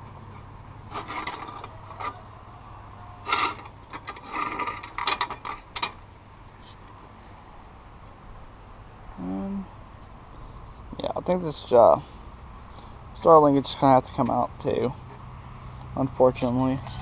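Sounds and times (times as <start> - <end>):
metal parts scraping and rattling: 0.3 - 2.3, 3.2 - 6.0.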